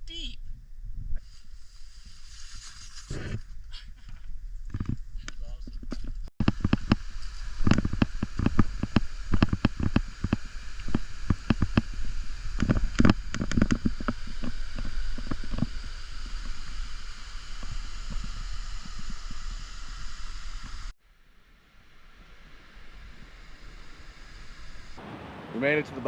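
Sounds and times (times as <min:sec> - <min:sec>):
river running: 0:25.0 - 0:26.0.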